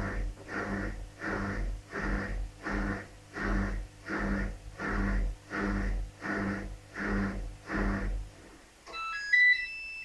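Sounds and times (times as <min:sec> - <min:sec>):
washing machine drum motor: 0:00.0 - 0:09.6
electronic tone melody: 0:08.9 - 0:10.0.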